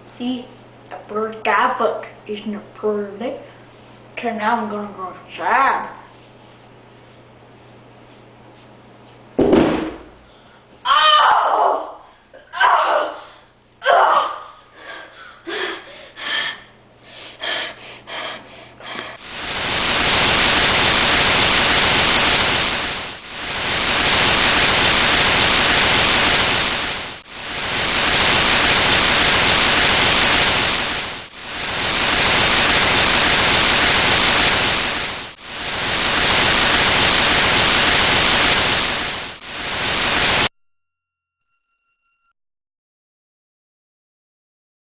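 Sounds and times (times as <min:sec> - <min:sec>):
loud static hiss: 0:18.8 - 0:40.5.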